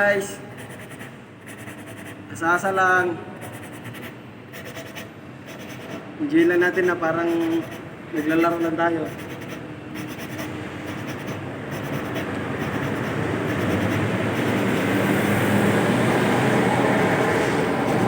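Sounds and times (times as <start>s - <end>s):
engine valve grinding scrape: 3.4s - 15.7s, 16.9s - 18.0s.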